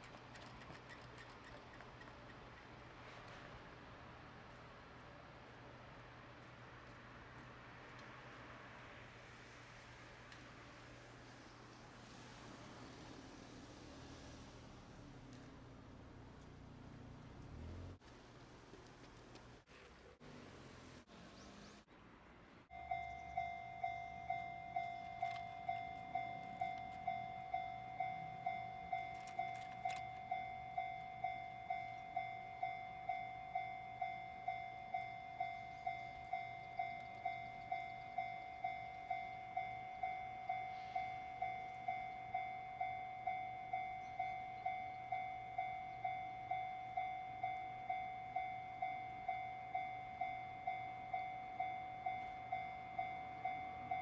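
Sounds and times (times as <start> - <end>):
level crossing alarm bell ringing: 22.7 - 54.0.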